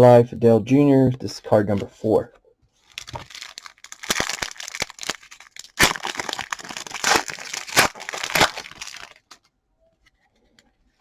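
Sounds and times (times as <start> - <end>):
plastic wrapper crinkling and tearing: 2.8 - 9.4.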